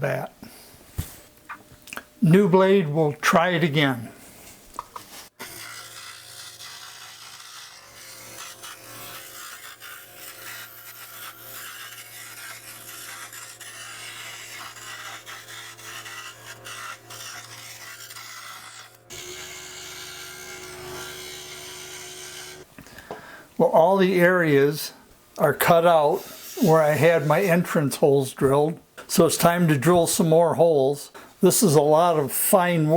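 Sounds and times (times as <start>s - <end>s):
scroll saw cutting wood: 5.3s - 22.7s, 25.6s - 27.6s
motor hum: 5.5s - 23.2s.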